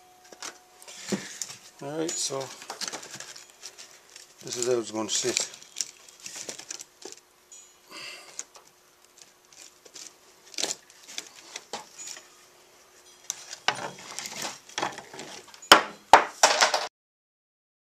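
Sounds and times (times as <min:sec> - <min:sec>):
wood pieces knocking and scraping: 0:00.3 - 0:07.2, 0:13.3 - 0:16.9.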